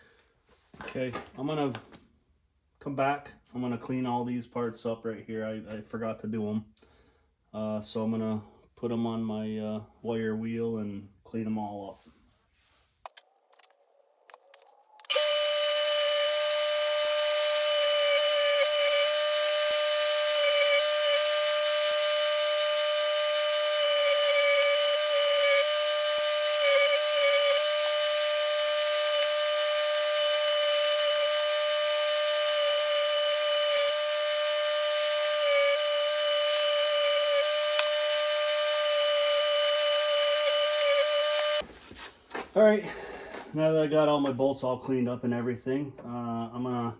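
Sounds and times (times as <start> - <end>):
electric wire wheel whining: 15.0 - 41.6.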